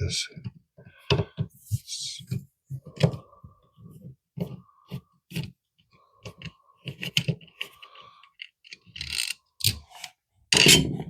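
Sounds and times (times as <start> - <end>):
small plastic clicks and scrapes: 4.4 - 10.2
plastic parts clattering: 6.2 - 11.0.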